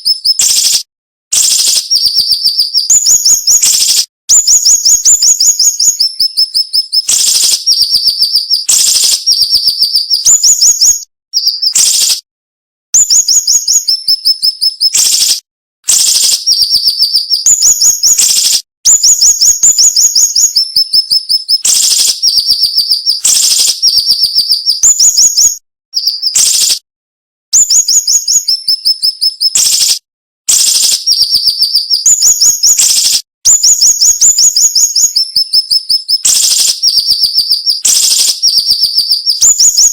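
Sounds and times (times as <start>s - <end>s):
songbird high-pitched rapid notes: 0.0s - 12.2s, 13.0s - 26.8s, 27.6s - 39.9s.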